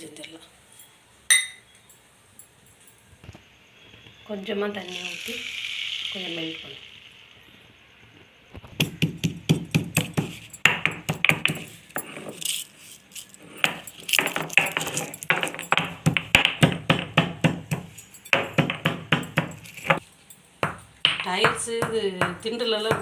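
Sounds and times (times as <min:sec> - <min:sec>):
pestle pounding in a mortar: 0:08.8 - 0:11.7, 0:13.6 - 0:20.0, 0:20.6 - 0:23.0.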